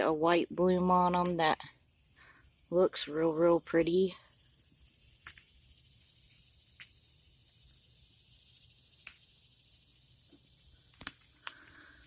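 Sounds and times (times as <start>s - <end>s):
high-pitched insect chorus: 0.0s - 12.0s
sharp clicks: 5.2s - 5.5s, 10.9s - 11.8s.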